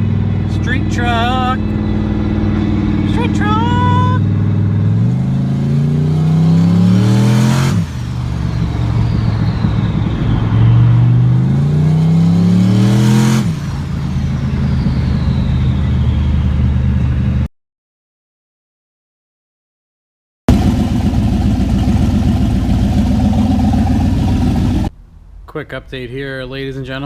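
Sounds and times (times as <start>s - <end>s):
engine revving hard: 0.0s - 17.5s
turbo whistle: 0.5s - 4.3s, 5.0s - 17.5s.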